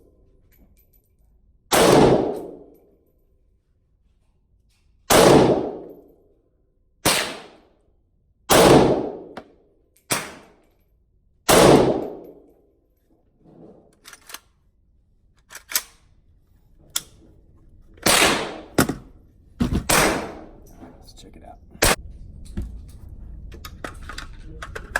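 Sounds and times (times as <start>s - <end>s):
rifle shots: 1.7s - 2.6s, 5.1s - 6.0s, 7.0s - 7.6s, 8.5s - 9.3s, 10.1s - 10.5s, 11.5s - 12.3s, 18.0s - 19.0s, 19.8s - 20.6s, 21.8s - 22.0s.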